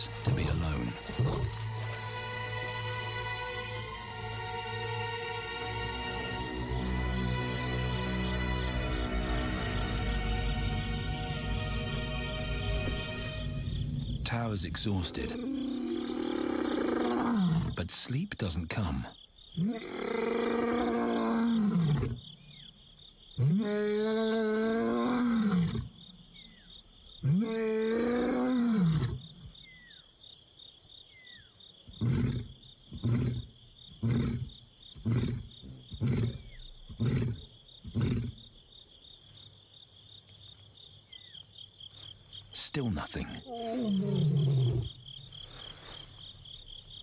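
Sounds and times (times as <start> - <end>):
lion roaring and grunting: 15.3 - 17.8, 27.2 - 29.2, 32.0 - 38.4, 43.4 - 45.0.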